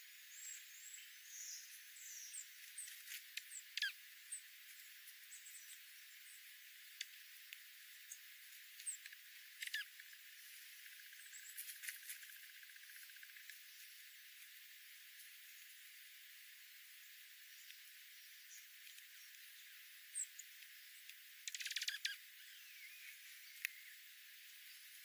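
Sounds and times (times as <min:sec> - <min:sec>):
steady hiss: 0:00.0 - 0:25.0
bird chirps: 0:00.3 - 0:04.4, 0:08.8 - 0:10.0, 0:21.4 - 0:24.0.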